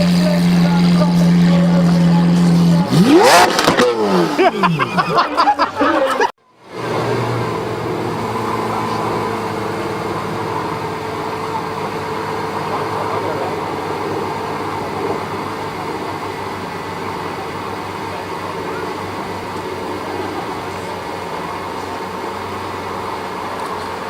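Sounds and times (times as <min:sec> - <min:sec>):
background voices: 0:00.0 - 0:06.3
car engine idling: 0:00.0 - 0:24.0.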